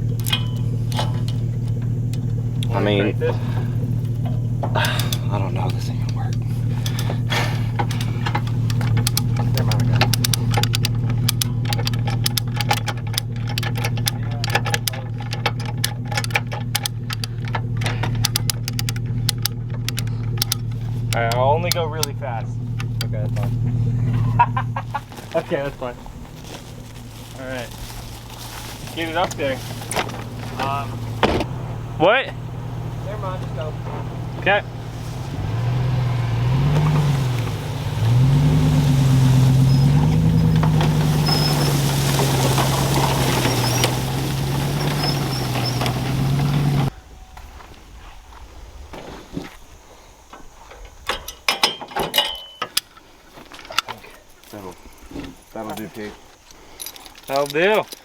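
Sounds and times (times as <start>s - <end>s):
engine idling: 0.0s - 48.5s
clatter of sharp clicks: 4.0s - 23.5s.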